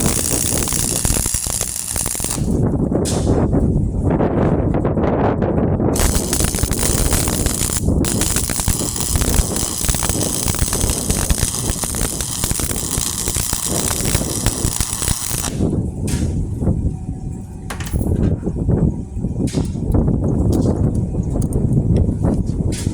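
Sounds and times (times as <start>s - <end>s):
arc welder crackling: 0.0s - 2.7s, 6.0s - 15.7s.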